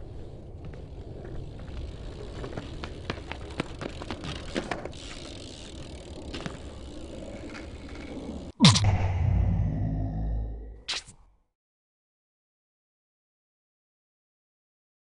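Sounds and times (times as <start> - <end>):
bike tyres rumbling on pavement: 0.0 - 8.5
bike clicks and rattles: 0.0 - 8.6.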